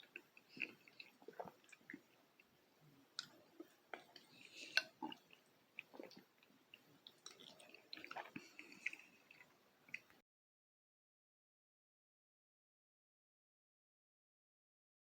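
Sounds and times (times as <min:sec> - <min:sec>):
wet chewing mouth clicks: 0:00.0 - 0:02.5, 0:03.2 - 0:10.2.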